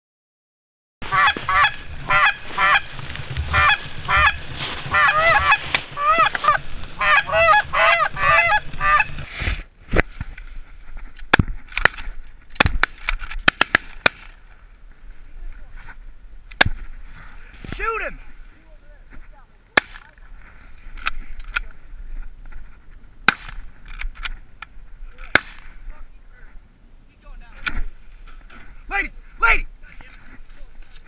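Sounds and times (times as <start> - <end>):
geese honking: 1.0 - 9.3.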